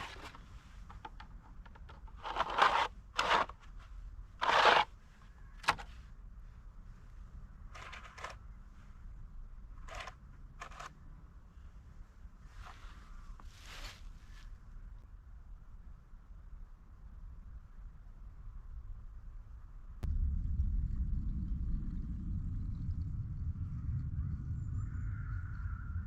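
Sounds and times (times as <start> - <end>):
scraping rasping sounds: 0.0 - 4.9, 7.7 - 8.4, 9.8 - 10.9.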